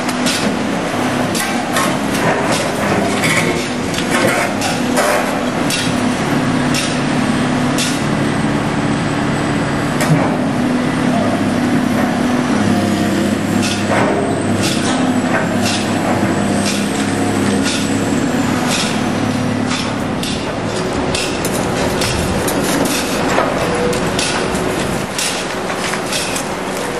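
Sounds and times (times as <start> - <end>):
heavy demolition machinery running: 0.0 - 26.9.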